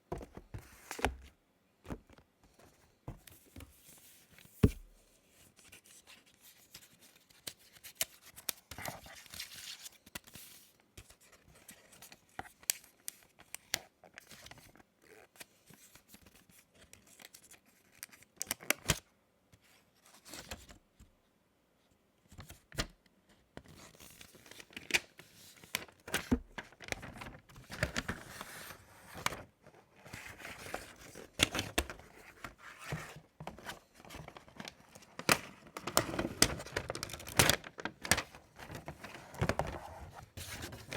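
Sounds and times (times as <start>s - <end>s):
paper and card tearing and rustling: 34.1s - 40.9s.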